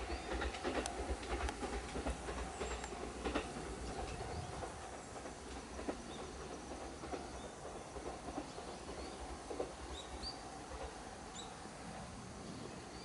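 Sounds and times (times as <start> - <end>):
faint train rumble: 0.0 - 13.0.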